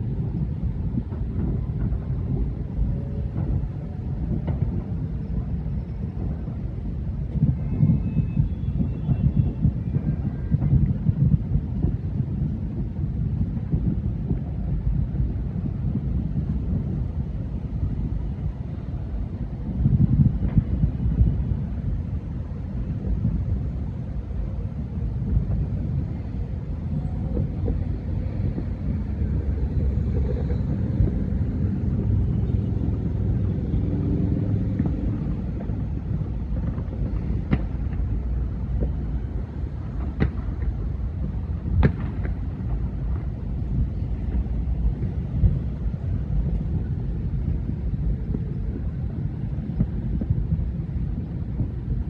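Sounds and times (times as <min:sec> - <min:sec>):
distant fireworks rumble: 0:00.0 - 0:52.0
sharp firework cracks: 0:34.7 - 0:45.6.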